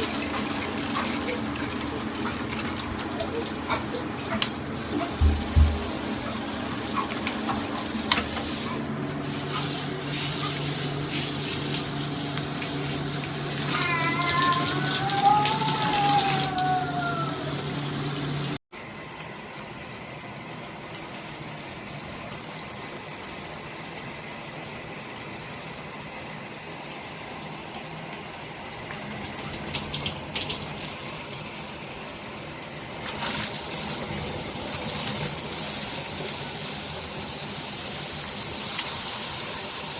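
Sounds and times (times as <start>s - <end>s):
water running from shower head: 0.0s - 18.6s, 33.1s - 39.9s.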